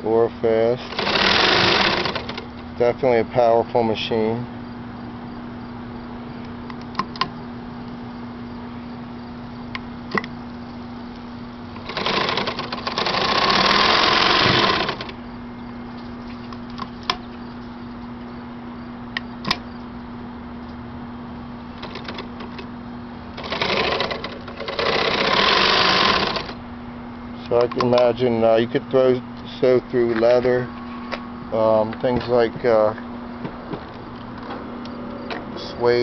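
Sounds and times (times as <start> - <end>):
motor humming: 0.5 - 2.8, 6.2 - 18.4, 21.4 - 36.0
sewing machine stitching fast: 0.9 - 2.4, 11.8 - 15.1, 23.4 - 26.6.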